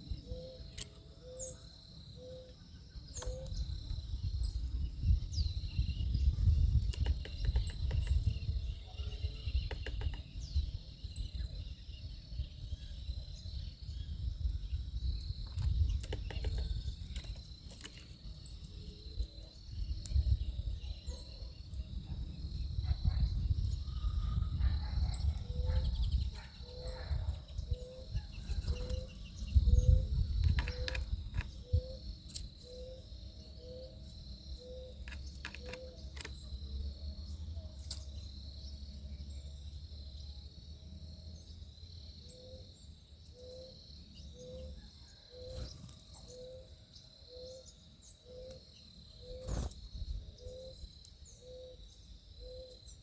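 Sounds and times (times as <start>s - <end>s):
insects chirring: 0.0s - 53.0s
gusty low rumble: 21.9s - 26.4s
scattered clicks: 35.0s - 36.4s.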